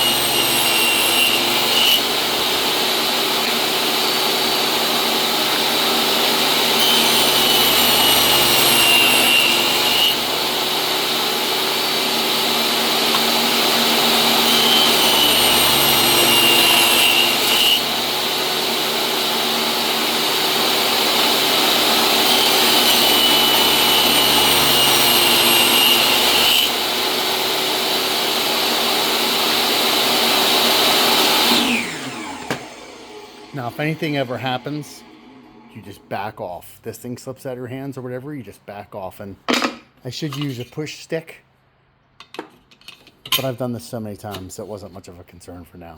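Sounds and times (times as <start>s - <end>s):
table saw running: 0.0s - 36.2s
saw blade whining through wood: 0.0s - 36.5s.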